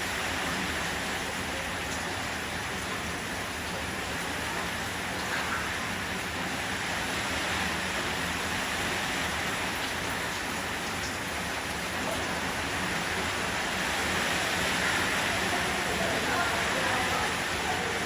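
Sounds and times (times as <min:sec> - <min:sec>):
steady rain falling: 0:00.0 - 0:18.0
stream rushing: 0:00.0 - 0:18.0.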